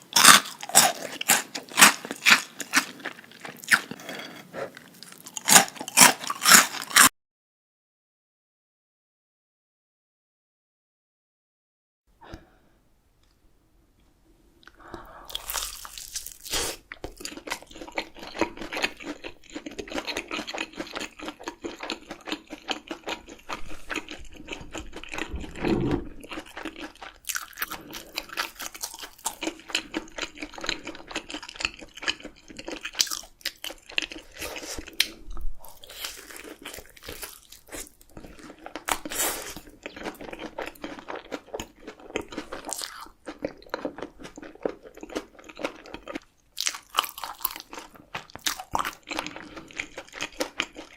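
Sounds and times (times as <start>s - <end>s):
person chewing and crunching food: 0.0s - 7.1s, 14.6s - 50.9s
wet mouth sounds: 22.6s - 28.5s.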